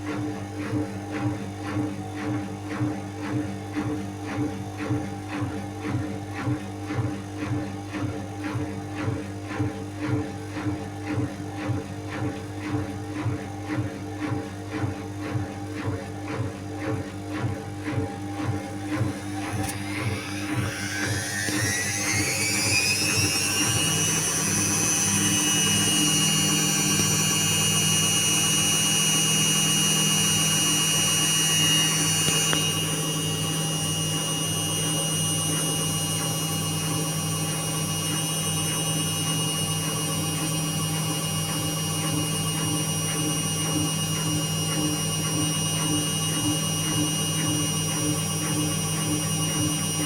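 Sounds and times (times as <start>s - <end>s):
washing machine drum spinning: 4.8s - 39.0s.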